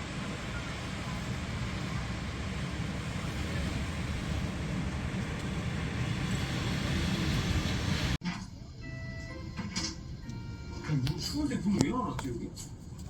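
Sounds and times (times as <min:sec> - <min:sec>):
car road and engine rumble: 0:00.0 - 0:08.2.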